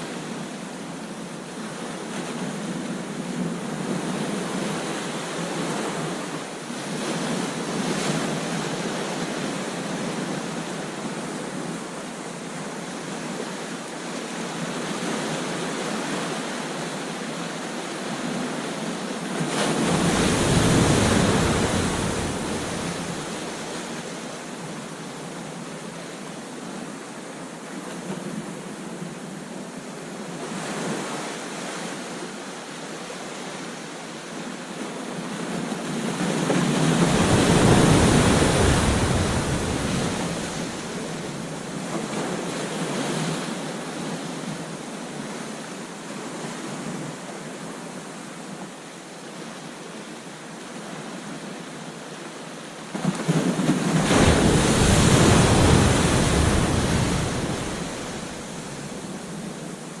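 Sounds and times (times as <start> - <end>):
waves crashing: 0.0 - 25.7, 30.4 - 47.8, 50.8 - 60.0
ocean surf washing: 0.0 - 60.0.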